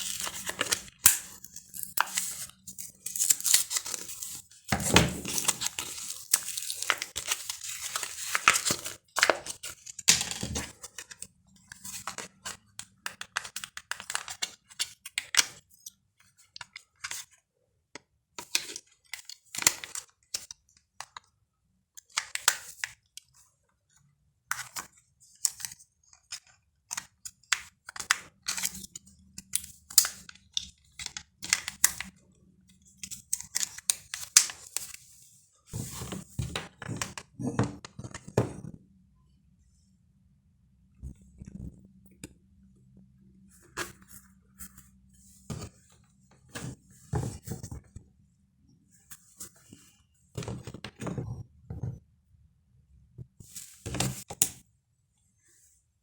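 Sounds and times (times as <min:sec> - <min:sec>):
packaging tearing and crinkling: 0:00.0 - 0:09.6.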